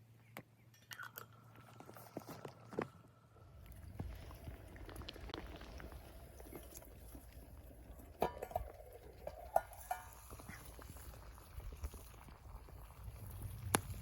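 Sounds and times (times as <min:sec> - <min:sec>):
faint crackles: 0:00.3 - 0:14.0
metal cookware clinking: 0:08.2 - 0:10.4.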